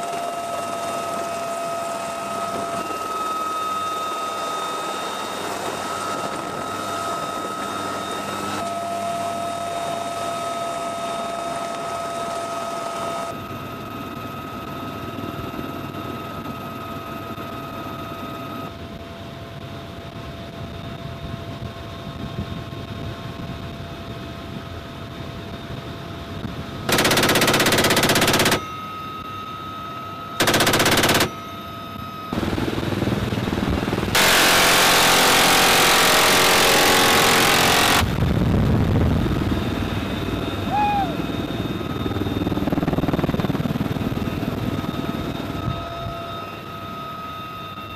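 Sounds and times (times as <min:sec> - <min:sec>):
helicopter engine: 0:00.0 - 0:18.7, 0:25.3 - 0:47.9
door gun rapid fire bursts: 0:26.9 - 0:28.6, 0:30.4 - 0:31.4, 0:34.0 - 0:38.1.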